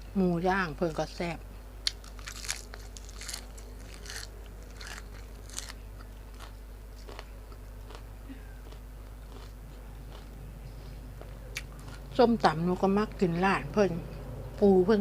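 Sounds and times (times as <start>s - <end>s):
person chewing and biting: 1.8s - 10.4s.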